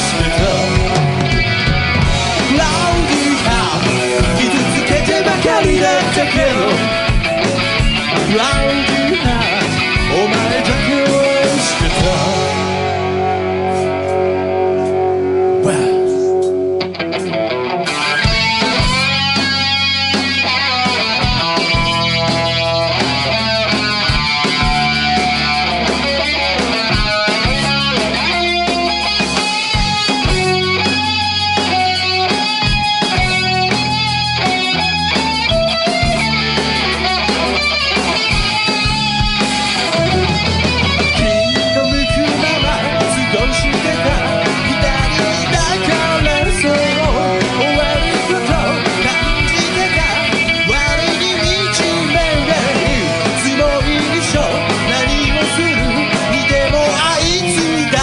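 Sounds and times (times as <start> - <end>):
bass guitar: 0.0 - 58.0
drums: 0.0 - 58.0
electric guitar: 0.0 - 58.0.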